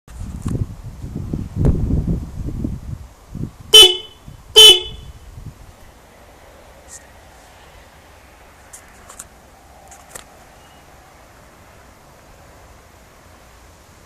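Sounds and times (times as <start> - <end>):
twin-tone horn blasts: 3.7 - 5.2.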